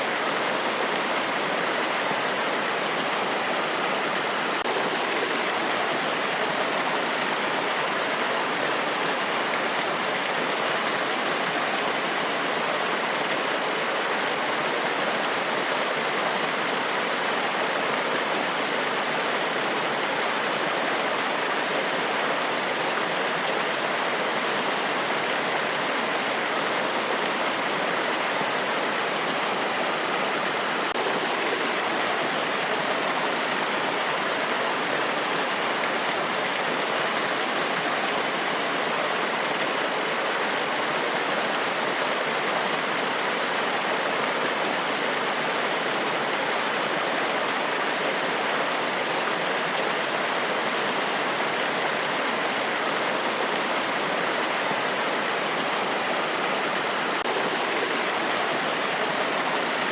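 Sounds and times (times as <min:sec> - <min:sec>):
water cascading over rocks: 0:00.0 - 0:59.9.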